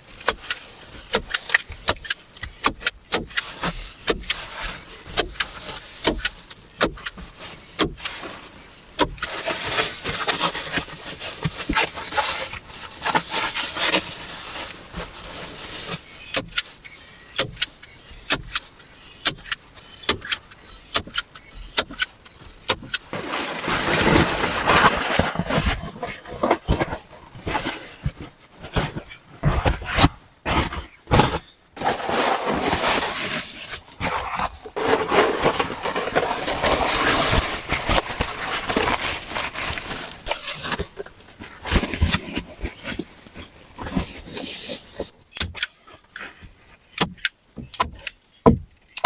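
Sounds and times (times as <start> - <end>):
rustling and scraping: 0.0 - 48.1
sharp knocks and clicks: 47.0 - 49.0.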